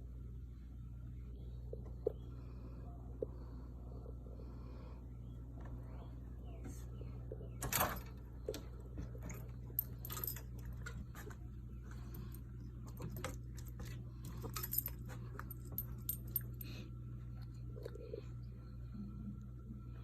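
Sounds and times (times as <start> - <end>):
steady low hum: 0.0 - 20.0
light metallic jingling: 9.2 - 11.4, 12.0 - 16.7.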